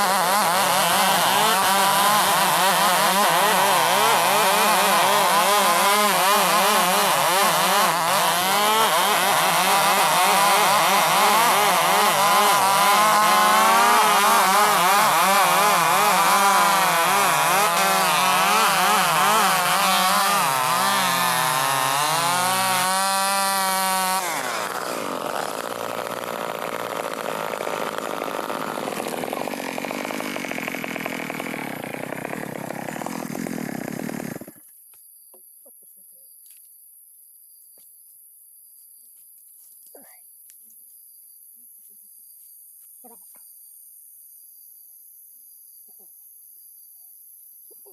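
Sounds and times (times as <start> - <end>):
chainsaw cutting through log: 0.0 - 34.6.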